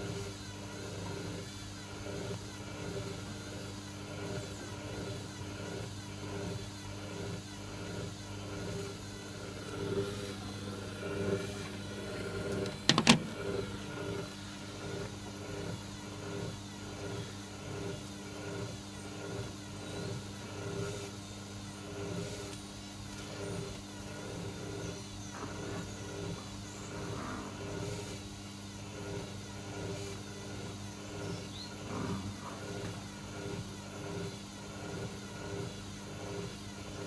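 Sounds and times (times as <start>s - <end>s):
washing machine drum turning: 12.4s - 13.6s.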